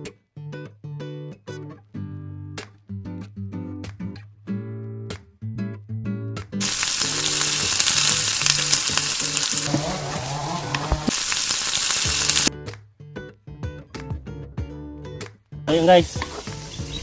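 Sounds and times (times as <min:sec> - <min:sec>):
chicken sizzling in a pan: 0:06.6 - 0:12.5, 0:15.7 - 0:17.0.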